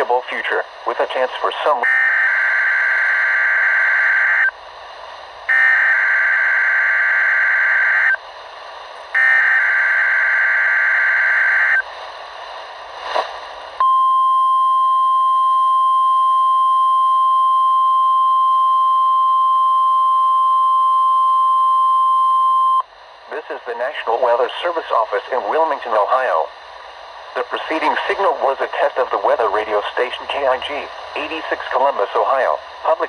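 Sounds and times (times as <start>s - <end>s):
steady warning alarm tone: 5.5s - 8.2s, 9.2s - 11.8s.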